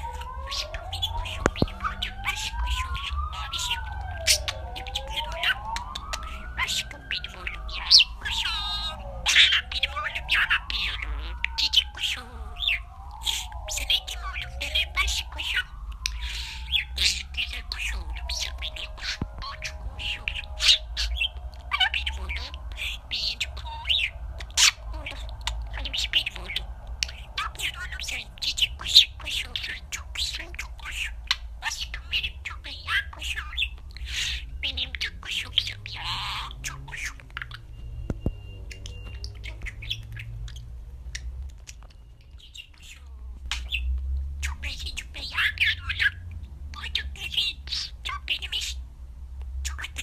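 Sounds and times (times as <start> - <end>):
budgerigar chirping: 0.0 - 48.8, 49.6 - 50.0
low steady hum: 0.0 - 50.0.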